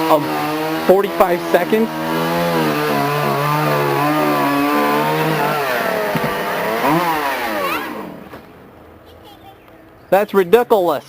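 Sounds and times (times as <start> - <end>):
chainsaw engine running: 0.0 - 8.4.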